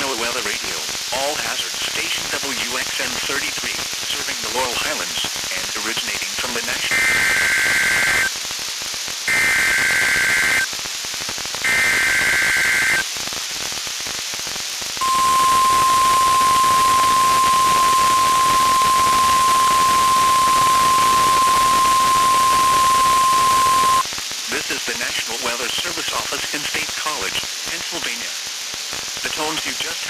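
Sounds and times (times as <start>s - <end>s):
radio hiss: 0.0s - 30.0s
warbling data tone bursts: 6.9s - 8.3s, 9.3s - 10.7s, 11.6s - 13.0s, 15.0s - 24.0s
steady warning alarm tone: 11.7s - 13.0s, 15.0s - 24.0s.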